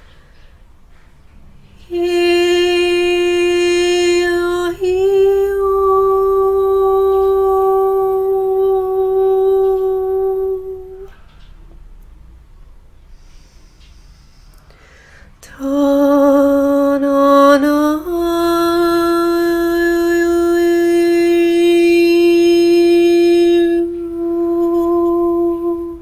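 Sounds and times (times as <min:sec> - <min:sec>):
person singing long notes: 0:01.8 - 0:11.2, 0:15.4 - 0:26.0.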